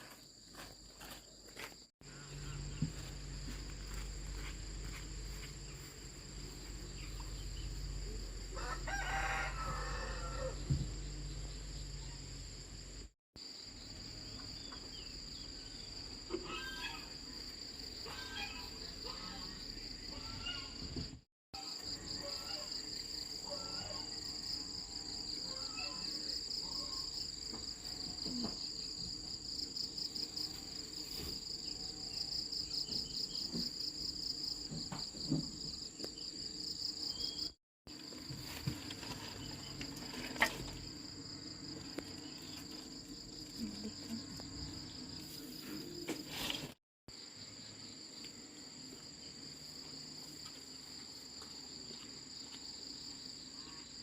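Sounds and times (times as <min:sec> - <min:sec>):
insects droning: 0:00.0 - 0:54.0
rooster crowing: 0:08.5 - 0:10.8.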